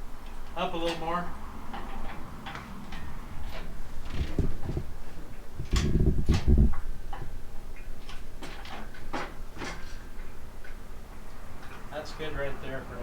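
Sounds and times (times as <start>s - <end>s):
metal clicks and ticks: 0.2s - 6.5s.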